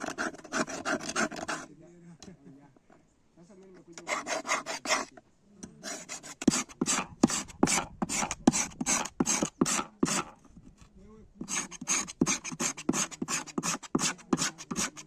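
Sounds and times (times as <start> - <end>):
file scraping strokes: 0.0 - 1.7, 4.0 - 5.2, 5.8 - 10.4, 11.4 - 15.0.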